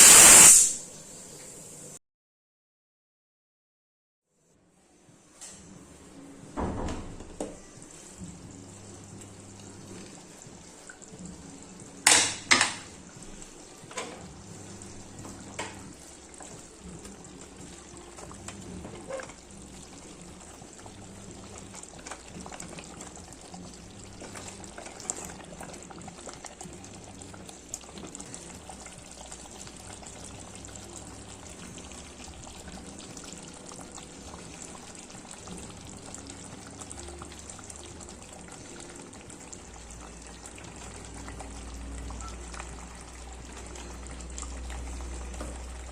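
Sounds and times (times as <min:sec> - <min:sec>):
curry bubbling in a pot: 0:13.0 - 0:45.9.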